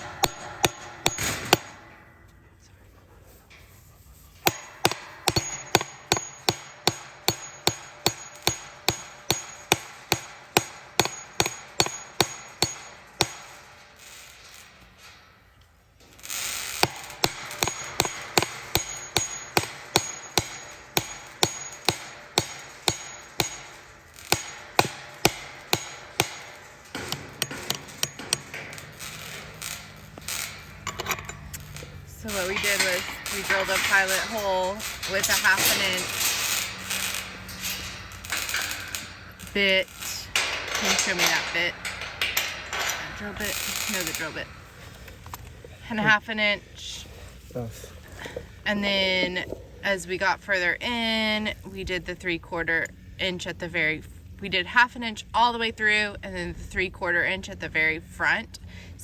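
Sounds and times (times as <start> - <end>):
hammer striking metal pin: 0.0 - 2.1, 4.4 - 14.6, 16.6 - 45.4.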